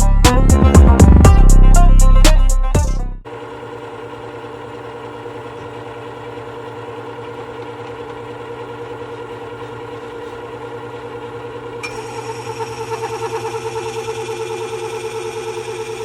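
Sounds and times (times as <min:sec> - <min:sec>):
sharpener motor humming: 0:03.3 - 0:16.0.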